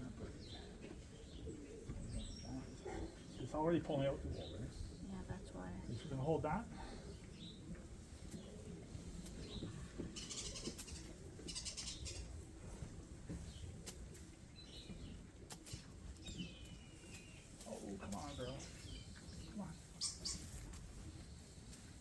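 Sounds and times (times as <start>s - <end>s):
rustling: 12.2s - 22.0s.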